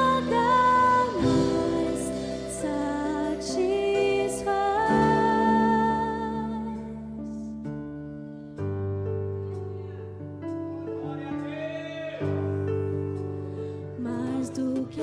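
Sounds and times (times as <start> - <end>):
person singing long gliding notes: 0.0 - 7.4.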